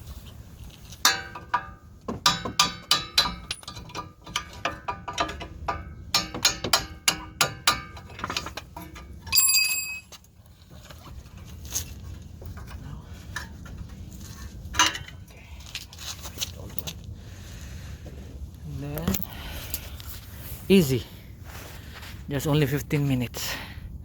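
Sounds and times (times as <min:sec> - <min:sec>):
high ringing metal clang: 0:09.2 - 0:10.1.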